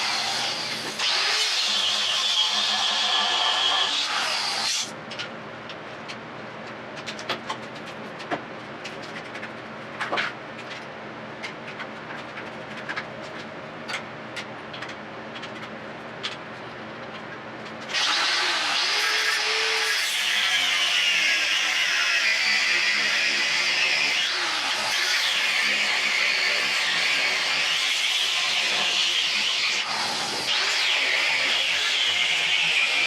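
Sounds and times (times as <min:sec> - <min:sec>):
power grinder on steel: 0:00.0 - 0:04.9, 0:17.9 - 0:33.0.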